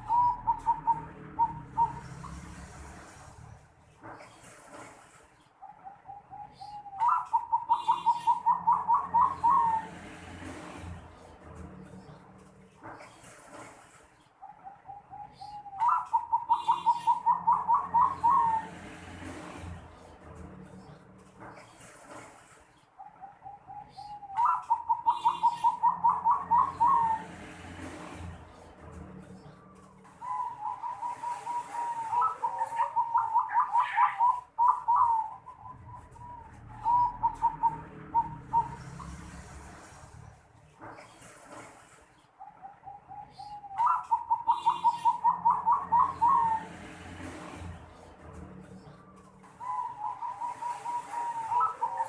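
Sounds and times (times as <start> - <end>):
dove cooing: 0.0 - 3.2, 5.6 - 10.8, 14.4 - 19.6, 23.0 - 28.2, 29.7 - 39.4, 42.4 - 47.6, 49.1 - 52.0.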